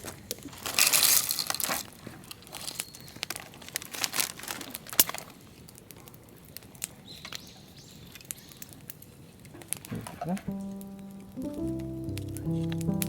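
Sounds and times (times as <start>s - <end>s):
firewood rustling and crackling: 0.1s - 10.1s.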